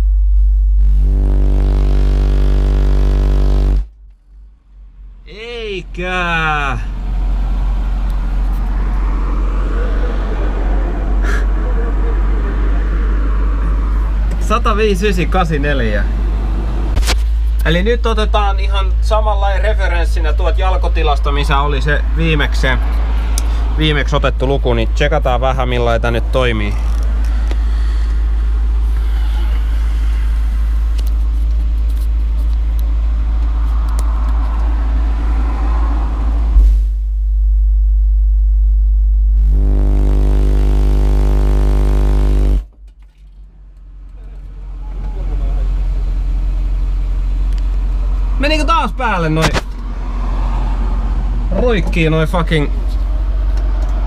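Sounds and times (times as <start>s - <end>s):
rattling buzz: 0.0s - 5.2s, 36.5s - 43.9s
deep subwoofer bass tone: 0.0s - 21.0s, 24.4s - 34.2s, 34.8s - 42.8s
car buzzing: 0.0s - 37.5s, 38.4s - 54.0s.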